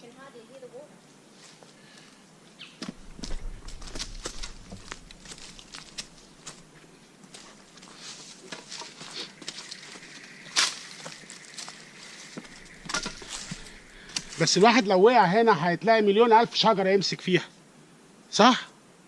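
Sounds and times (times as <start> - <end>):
footsteps on forest trail: 1.3 - 14.8.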